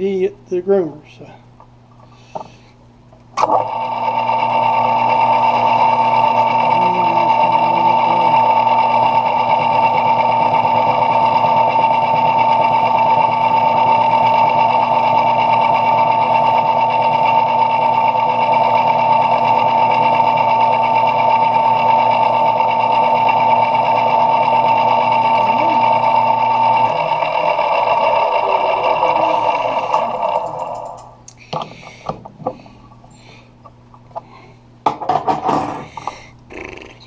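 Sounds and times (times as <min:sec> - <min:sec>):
metal lathe motor whine: 0:03.4 - 0:32.0.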